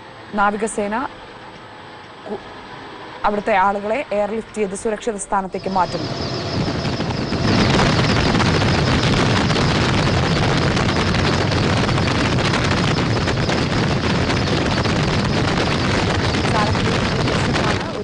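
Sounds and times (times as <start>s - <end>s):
helicopter rotor and engine: 0.0s - 18.0s.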